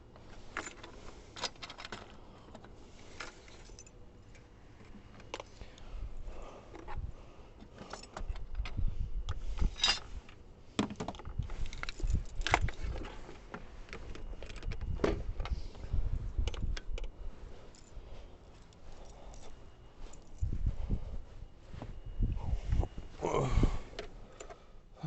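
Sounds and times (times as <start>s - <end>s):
metal tools clinking: 0.3s - 2.2s, 3.0s - 4.5s, 9.5s - 10.1s.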